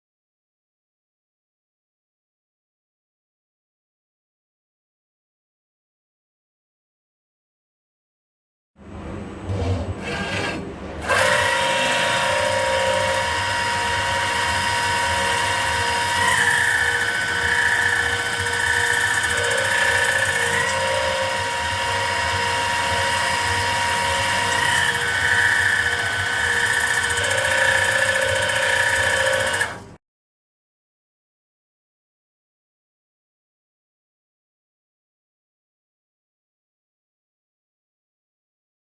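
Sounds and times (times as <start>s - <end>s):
high-speed spindle whine: 10.0s - 29.9s.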